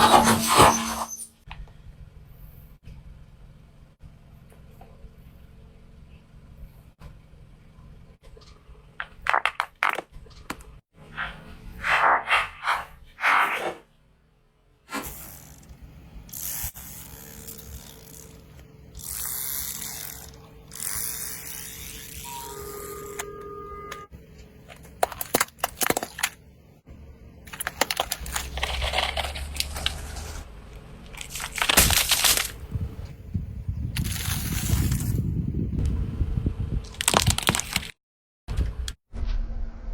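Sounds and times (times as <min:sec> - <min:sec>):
objects crackling as crushed: 0:24.7 - 0:26.4, 0:27.5 - 0:32.7, 0:36.9 - 0:38.0
low rumble: 0:38.6 - 0:39.9.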